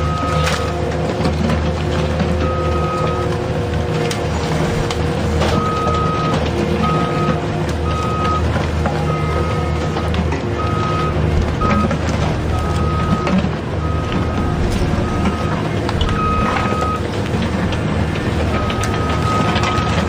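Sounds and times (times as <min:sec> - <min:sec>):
high electronic beep: 0:12.6 - 0:17.0.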